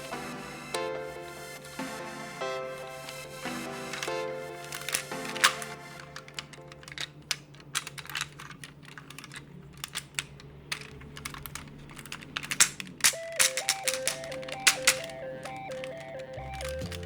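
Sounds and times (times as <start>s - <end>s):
music: 0.0s - 7.1s, 13.1s - 17.0s
plastic toy parts clicking: 2.7s - 17.0s.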